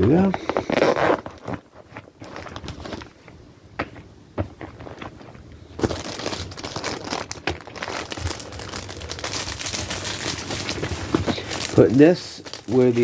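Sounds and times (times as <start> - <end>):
plastic packaging crinkling: 0.2 - 3.3, 4.7 - 13.0.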